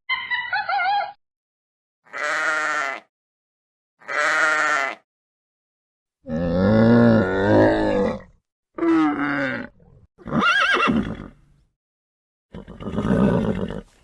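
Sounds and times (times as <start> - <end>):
wavering bleats: 2.1 - 3.1, 4.0 - 5.0.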